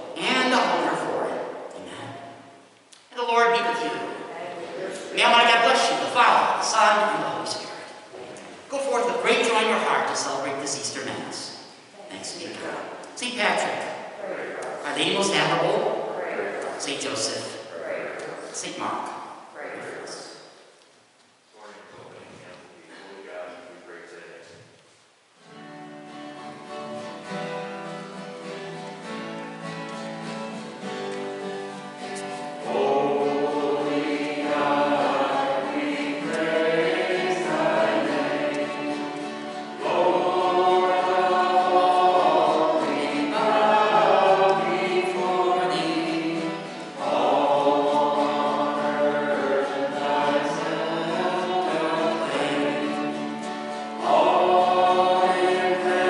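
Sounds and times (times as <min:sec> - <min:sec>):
choir singing a hymn: 0:04.9 - 0:08.1, 0:30.4 - 0:56.0.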